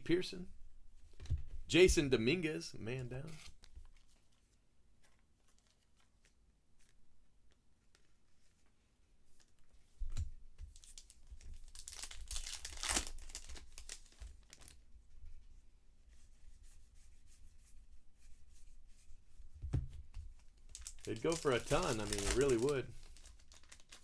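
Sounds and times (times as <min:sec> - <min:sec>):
card pack wrapper tearing: 0:10.8 - 0:14.8, 0:20.6 - 0:24.0.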